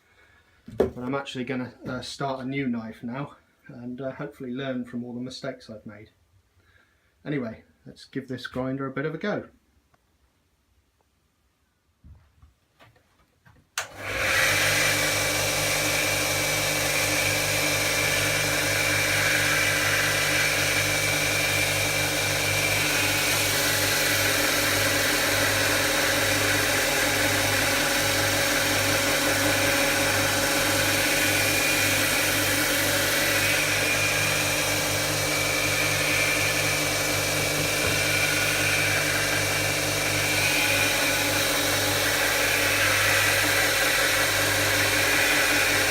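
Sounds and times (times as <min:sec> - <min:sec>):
belt grinder grinding steel: 0:13.8 - 0:45.9.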